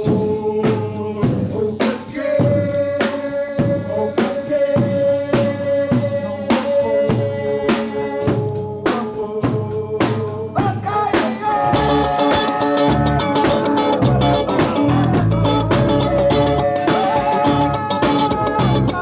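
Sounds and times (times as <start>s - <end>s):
drum hits: 10.1s - 19.0s
keyboard notes: 11.4s - 19.0s
electric guitar notes: 11.5s - 19.0s
bass guitar: 11.6s - 19.0s.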